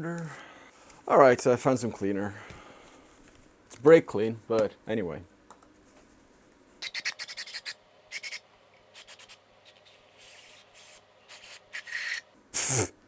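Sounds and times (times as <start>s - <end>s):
aerosol can ball rattling: 6.8s - 8.4s, 9.0s - 12.2s
spray hissing: 6.8s - 12.9s.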